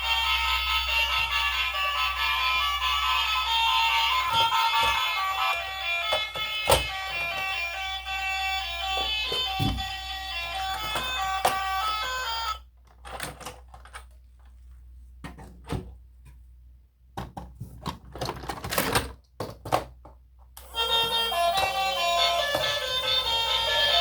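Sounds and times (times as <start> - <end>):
background music: 20.7 - 24.0.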